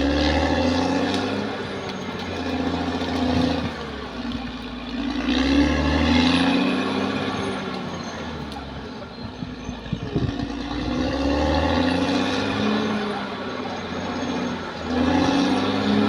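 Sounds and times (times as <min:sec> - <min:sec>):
bulldozer diesel engine: 0:00.0 - 0:16.0.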